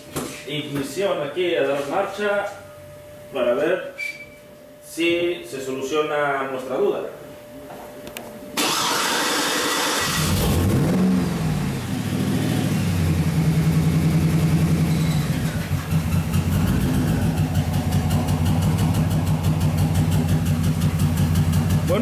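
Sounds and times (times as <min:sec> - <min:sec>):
starter cranking engine: 0:08.6 - 0:10.8, 0:14.8 - 0:22.0
car engine revving and idling: 0:08.8 - 0:22.0.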